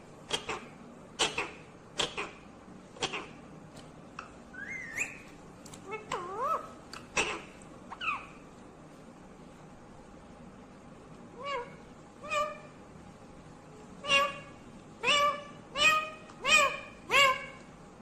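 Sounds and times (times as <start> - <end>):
parakeet calls: 0.3 - 2.4, 4.5 - 8.4, 11.4 - 12.8, 14.0 - 17.7.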